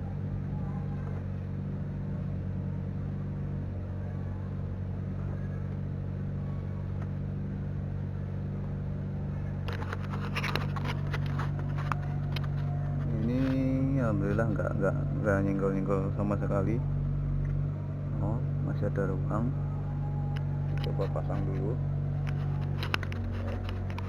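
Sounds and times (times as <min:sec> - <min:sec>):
low mechanical hum: 0:00.0 - 0:24.0
plastic parts clicking and scraping: 0:09.6 - 0:13.8, 0:20.3 - 0:24.0.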